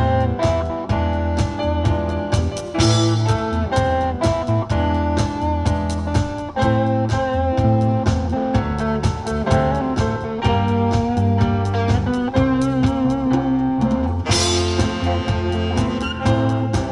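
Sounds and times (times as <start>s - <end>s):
bass guitar: 0.0s - 16.9s
drum kit: 0.0s - 16.9s
guitar: 0.0s - 16.9s
keyboard: 0.0s - 16.9s
saxophone: 14.3s - 16.9s.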